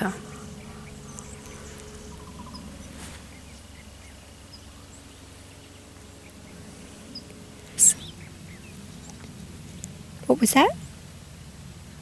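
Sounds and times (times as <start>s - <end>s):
high bird chirps: 0.2s - 9.1s.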